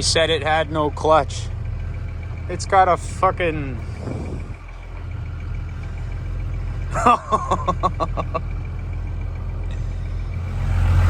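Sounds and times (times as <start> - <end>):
pickup truck engine idling: 0.0 - 11.0
person laughing: 6.9 - 8.6.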